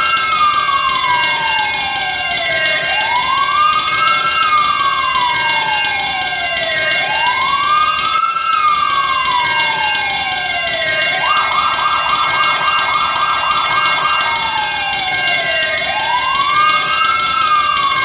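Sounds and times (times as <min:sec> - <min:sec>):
electronic siren wail and yelp: 0:00.0 - 0:18.0
steady high-pitched tone: 0:10.3 - 0:17.5.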